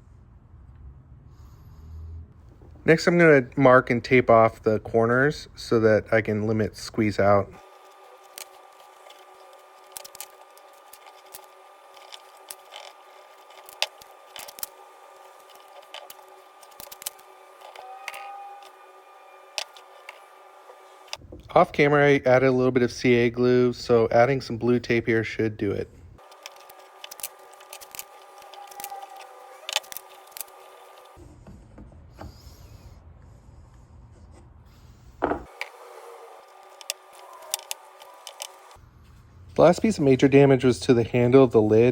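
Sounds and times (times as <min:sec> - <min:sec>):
steady low hum: 0:00.0 - 0:39.7
tape rubbing and handling: 0:07.6 - 0:21.2, 0:26.2 - 0:31.2, 0:35.4 - 0:39.7.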